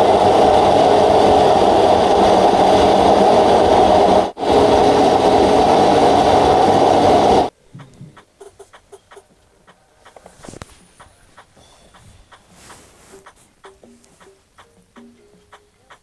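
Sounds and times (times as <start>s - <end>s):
loud mechanical whirring: 0.0s - 7.5s.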